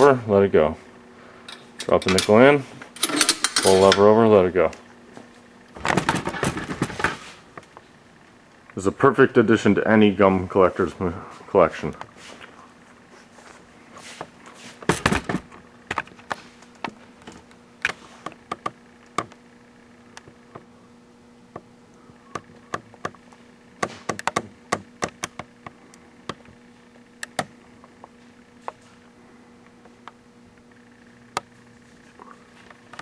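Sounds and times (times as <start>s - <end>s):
faint steady hum: 0.0s - 33.0s
gumball machine knocks and clicks: 23.8s - 25.5s.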